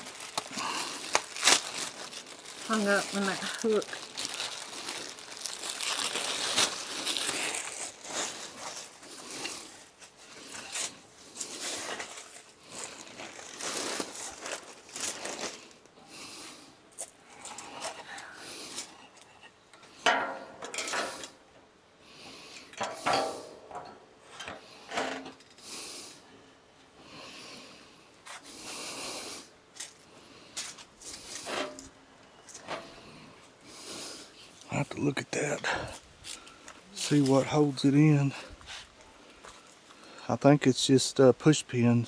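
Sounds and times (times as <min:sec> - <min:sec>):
plastic parts rustling and knocking: 0:22.7 - 0:25.6.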